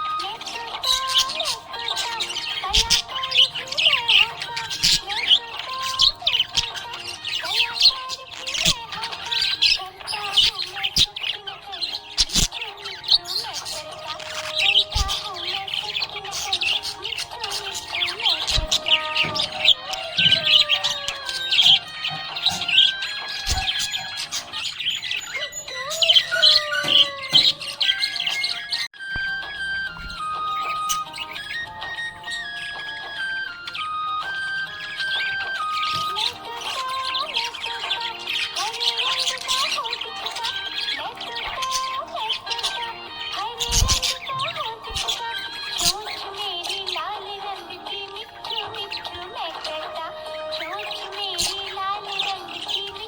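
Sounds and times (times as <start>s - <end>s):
budgies chirping and squawking: 0.0s - 53.0s.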